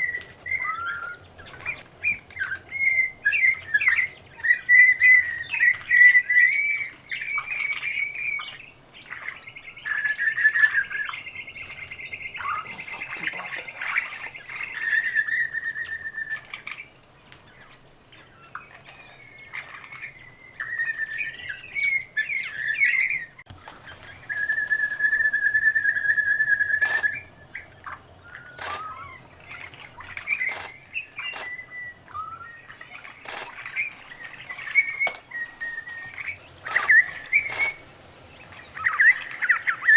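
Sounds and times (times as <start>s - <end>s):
birds whistling: 0.0s - 39.9s
long steady bird whistle: 0.0s - 39.9s
bird rattling trill: 23.8s - 39.9s
sharp bird chips: 24.4s - 27.3s, 28.3s - 39.9s.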